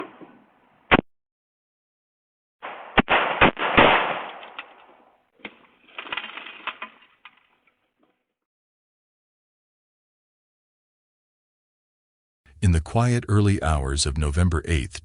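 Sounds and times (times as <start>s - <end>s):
sharp bangs: 2.6s - 5.0s.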